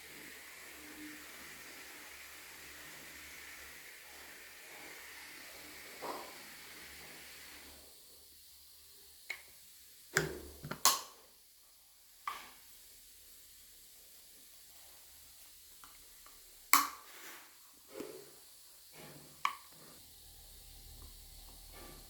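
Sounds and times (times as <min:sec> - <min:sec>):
vacuum bottle clicks and knocks: 0:10.2 - 0:11.1.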